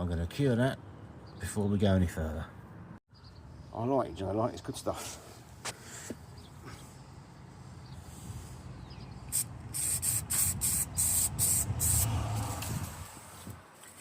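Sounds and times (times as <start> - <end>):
aerosol spray can hissing: 9.3 - 12.2.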